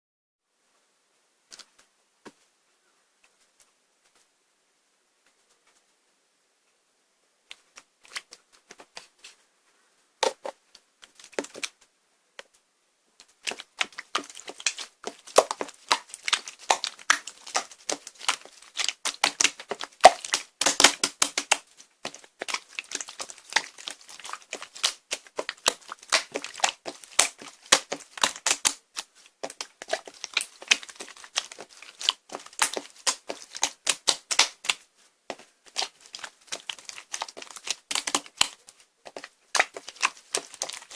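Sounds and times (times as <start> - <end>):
slime clicking and popping: 13.4 - 40.9.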